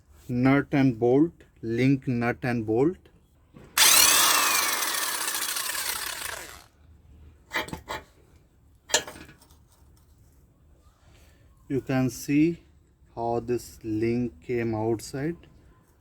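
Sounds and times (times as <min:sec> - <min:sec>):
power tool whining: 0:03.8 - 0:06.7.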